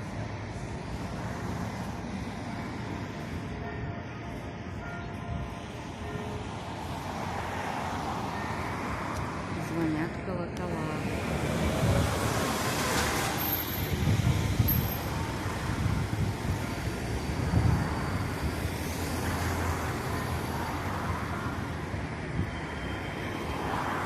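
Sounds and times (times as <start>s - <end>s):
road traffic rumble: 0.0s - 24.0s.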